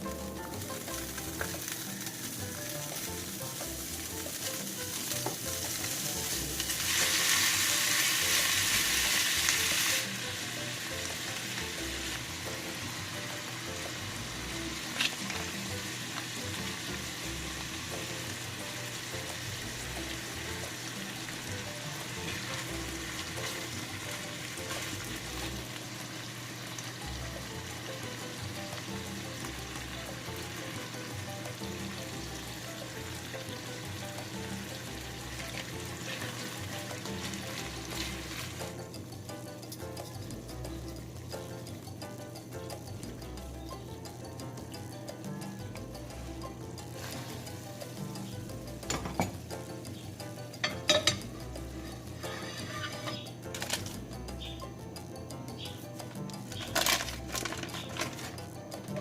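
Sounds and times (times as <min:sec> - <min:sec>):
food sizzling in a pan: 0:00.0 - 0:40.6, 0:44.1 - 0:53.8
faint background music: 0:00.0 - 0:59.0
stirring in a pan: 0:46.8 - 0:48.0, 0:50.9 - 0:53.3.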